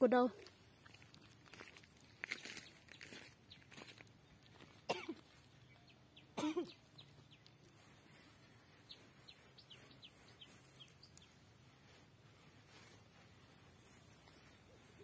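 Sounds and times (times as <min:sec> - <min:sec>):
small bird chirping: 0:05.2 - 0:15.0.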